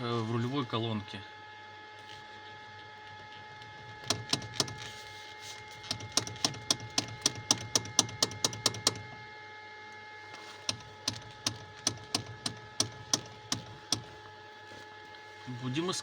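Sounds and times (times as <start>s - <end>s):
steering column knocking: 3.8s - 5.0s, 5.8s - 9.2s, 10.6s - 14.3s.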